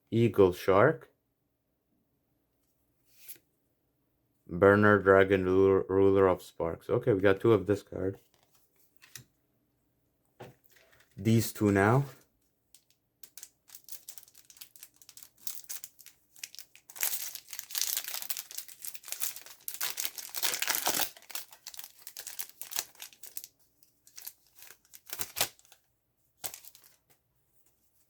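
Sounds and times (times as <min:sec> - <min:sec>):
foil wrapper crinkling and tearing: 0:12.8 - 0:27.1.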